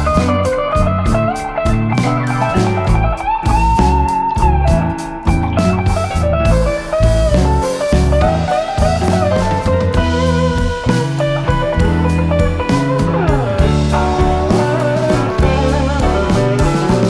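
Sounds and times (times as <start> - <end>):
electric guitar background music: 0.0 - 17.0.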